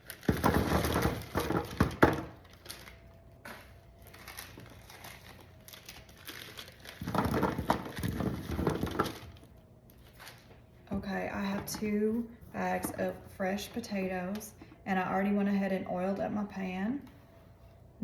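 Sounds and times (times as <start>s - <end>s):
plastic bag crinkling: 0.0s - 10.6s.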